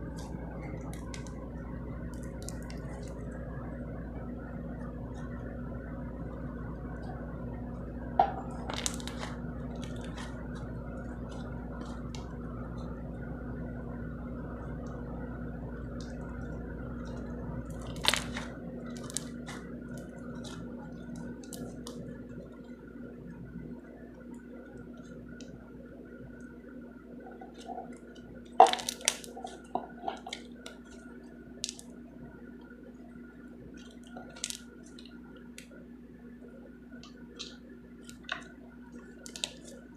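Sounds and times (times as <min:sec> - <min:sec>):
slime squishing and popping: 0:00.0 - 0:03.4, 0:08.2 - 0:12.4, 0:15.9 - 0:22.2, 0:27.4 - 0:32.0, 0:33.8 - 0:35.8, 0:37.0 - 0:39.9
steady low hum: 0:00.0 - 0:39.9.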